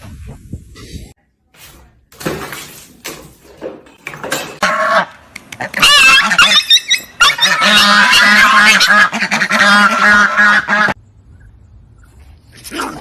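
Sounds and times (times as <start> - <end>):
honking animal calls: 4.6 - 11.0.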